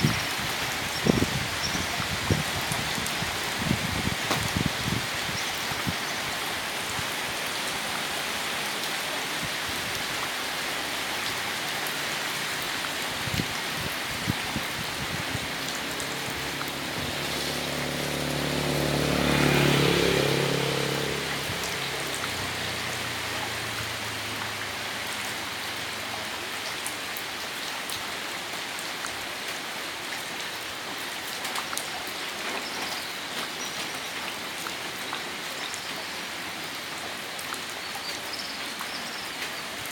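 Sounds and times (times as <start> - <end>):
steady rain falling: 0.0 - 39.9
vehicle engine passing by: 15.4 - 25.2.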